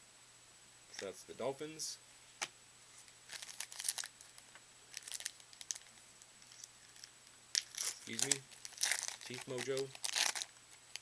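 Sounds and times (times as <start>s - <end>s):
wrapper crinkling and tearing: 3.3s - 11.0s.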